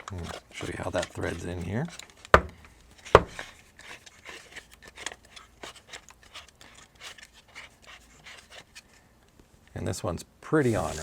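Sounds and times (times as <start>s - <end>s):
barrel scraping and clicking: 10.6s - 11.0s.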